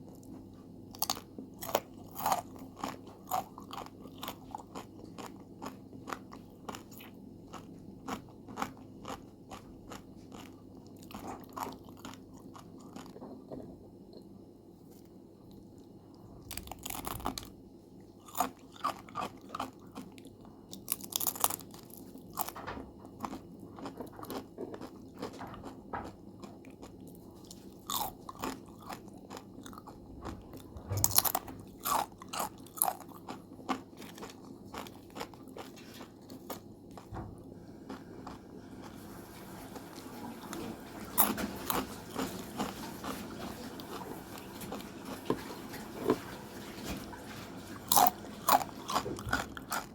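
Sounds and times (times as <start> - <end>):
soft chewing: 0.0 - 22.6, 23.2 - 37.1, 37.9 - 39.0
crunching potato chips: 0.9 - 13.2, 16.5 - 17.6, 18.2 - 22.6, 23.2 - 37.1, 47.8 - 49.9.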